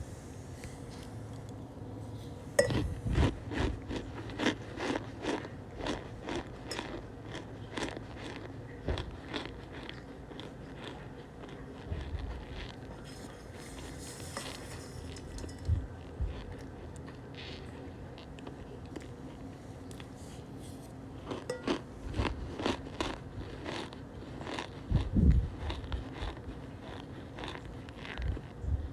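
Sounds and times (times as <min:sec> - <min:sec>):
cornstarch crunching: 0:03.3 - 0:15.6.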